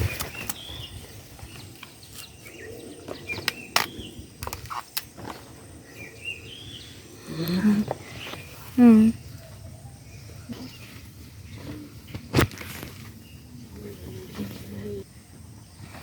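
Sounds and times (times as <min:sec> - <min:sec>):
bird chirps: 0:00.0 - 0:12.4.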